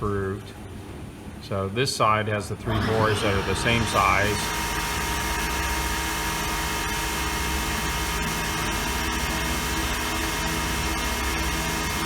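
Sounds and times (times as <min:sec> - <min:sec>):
milling machine spindle hum: 0:02.6 - 0:12.0.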